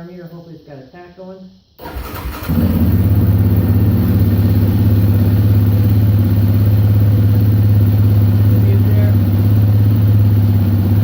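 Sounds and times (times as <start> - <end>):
engine starting and idling: 1.8 - 7.2.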